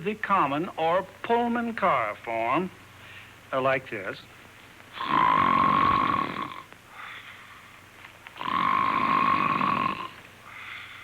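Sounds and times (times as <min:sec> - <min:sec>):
man snoring: 0:05.0 - 0:06.7, 0:08.4 - 0:10.2
soft breath out: 0:10.4 - 0:11.0.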